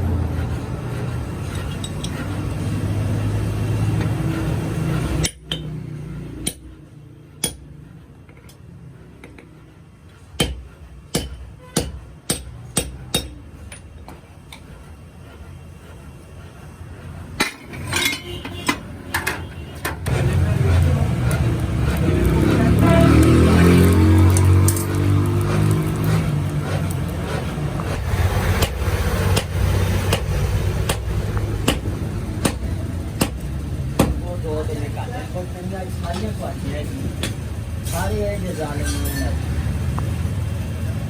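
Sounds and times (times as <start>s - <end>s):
hammer striking metal: 5.0s - 8.5s, 10.4s - 14.2s, 17.4s - 34.2s.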